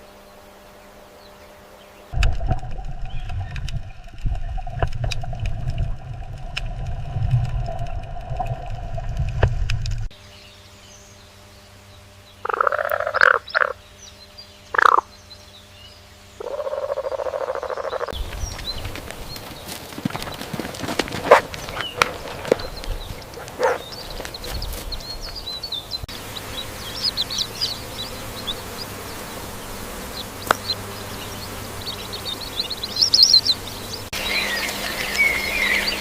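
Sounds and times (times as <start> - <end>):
low rumbling noise: 2.0 - 10.2
scattered clicks: 2.2 - 10.1
frog croaking: 12.4 - 13.8, 14.7 - 15.1, 16.4 - 18.2.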